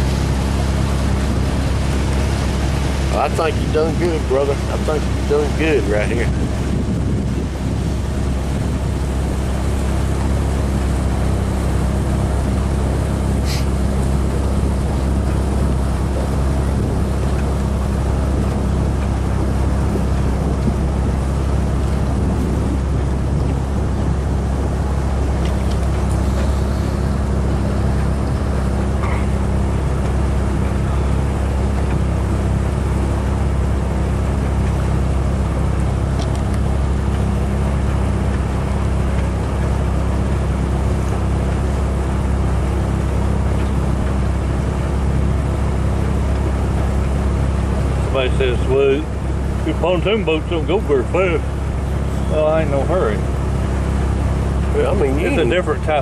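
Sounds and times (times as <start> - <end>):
outboard motor running: 0.0 - 56.0.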